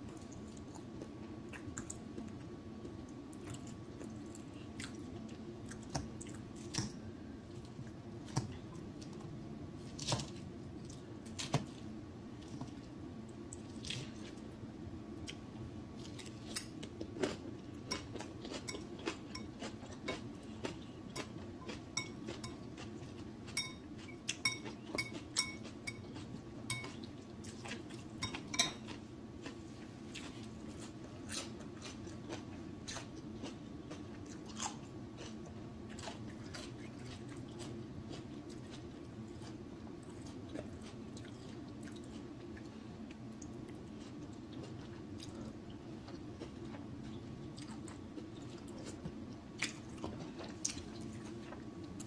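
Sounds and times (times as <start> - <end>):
steady low hum: 0.0 - 52.0
wet chewing with mouth clicks: 16.0 - 52.0.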